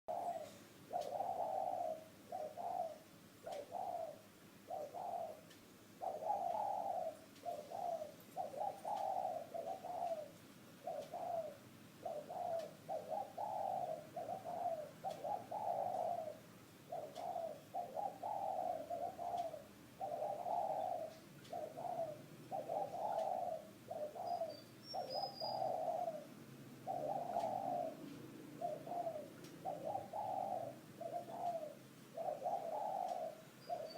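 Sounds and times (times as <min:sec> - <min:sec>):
dove cooing: 0:00.1 - 0:33.9.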